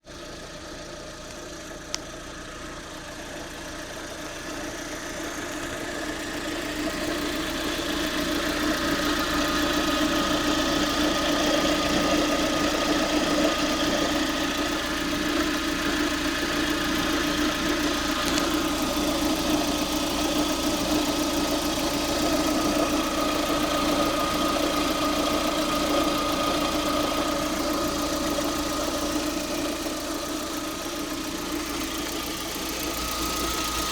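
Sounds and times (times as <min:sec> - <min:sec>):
car engine idling: 0:00.0 - 0:33.9
whining hum over engine: 0:00.1 - 0:33.9.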